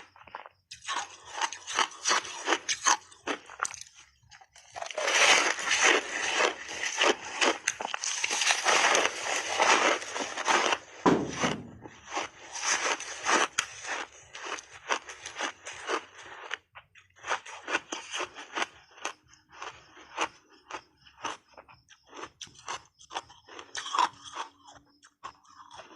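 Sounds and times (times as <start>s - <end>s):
chewing and crunching ice: 0.0s - 25.9s.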